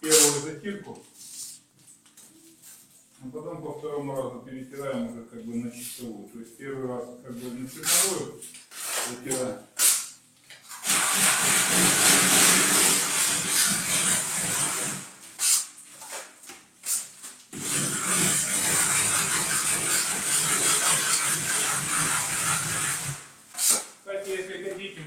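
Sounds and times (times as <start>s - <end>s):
float scraping on plaster: 7.5s - 10.1s, 10.7s - 15.7s, 17.5s - 23.9s.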